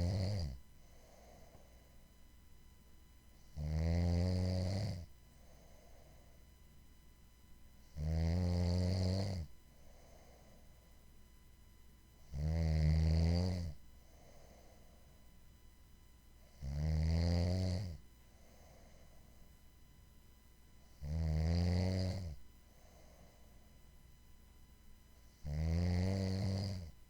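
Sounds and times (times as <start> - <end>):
person snoring: 0.0 - 1.5, 3.5 - 5.1, 7.9 - 9.5, 12.3 - 13.8, 16.5 - 18.0, 21.0 - 22.4, 25.3 - 26.9
faint breath: 0.7 - 2.2, 5.3 - 6.7, 9.7 - 11.1, 13.9 - 15.4, 18.2 - 19.7, 22.6 - 23.9.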